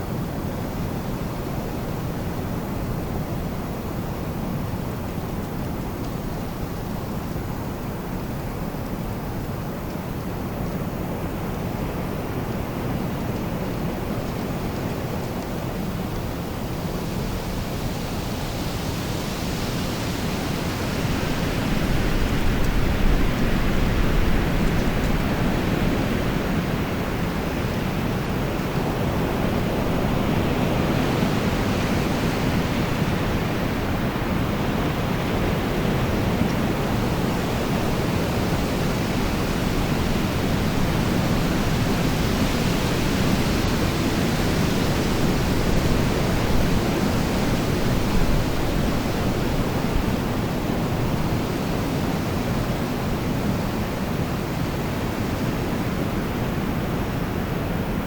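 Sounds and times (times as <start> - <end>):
wind roaring: 0.0 - 58.0.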